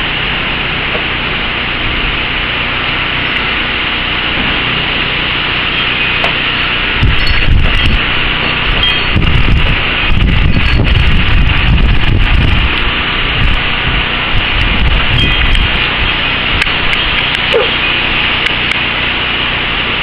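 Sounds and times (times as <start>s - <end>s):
wind rushing through trees: 0.7s - 19.1s
wind gusts buffeting microphone: 6.2s - 17.5s.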